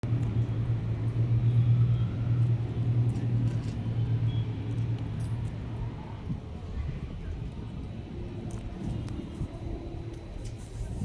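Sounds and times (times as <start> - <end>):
aircraft engines droning overhead: 0.0 - 11.0.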